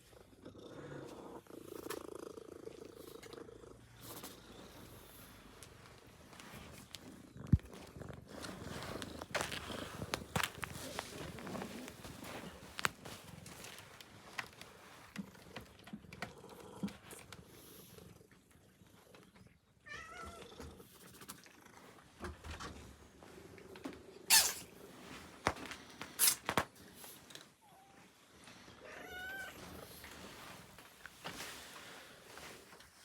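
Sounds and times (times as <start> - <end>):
cat meowing: 19.8 - 20.5, 28.8 - 29.6.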